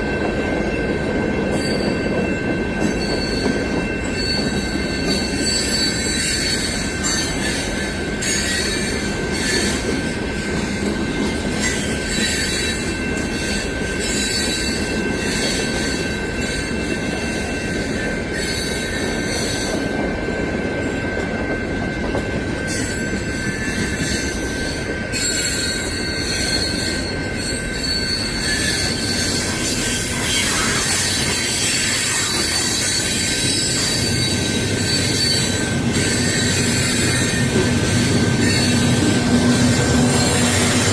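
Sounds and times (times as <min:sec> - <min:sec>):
rumble of train cars on rails: 0:00.0 - 0:40.9
train wheels squealing: 0:00.0 - 0:40.9.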